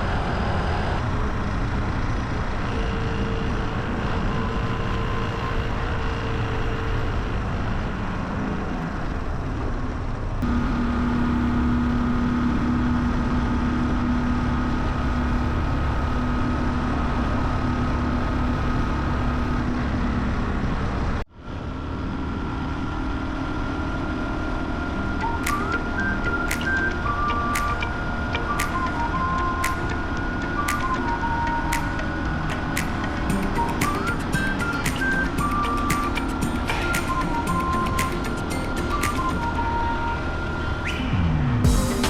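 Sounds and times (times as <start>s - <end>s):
road and wind noise: 0.0s - 42.0s
motorcycle engine running: 22.0s - 39.6s, 41.6s - 42.0s.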